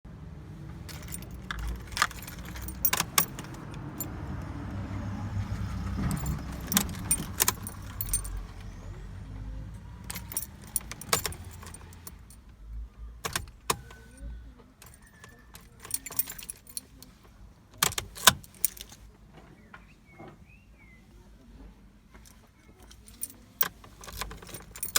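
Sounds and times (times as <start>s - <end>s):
car keys jangling and clicking: 0.8s - 4.8s, 5.4s - 8.8s, 10.0s - 12.6s, 13.2s - 14.2s, 14.8s - 17.1s, 17.8s - 19.0s, 22.1s - 24.9s.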